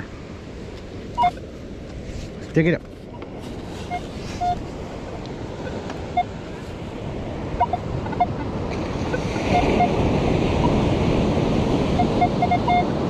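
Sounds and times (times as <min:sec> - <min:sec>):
surf: 0:00.0 - 0:13.0
wind: 0:00.0 - 0:13.0
metal detector beeps: 0:01.2 - 0:01.4, 0:03.8 - 0:04.6, 0:05.6 - 0:06.3, 0:07.6 - 0:08.4, 0:09.1 - 0:10.0, 0:11.9 - 0:12.9.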